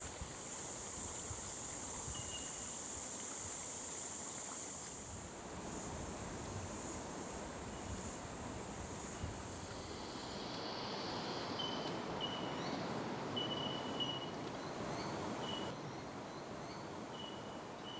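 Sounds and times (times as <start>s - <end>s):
high-pitched hiss: 0.0s - 12.8s.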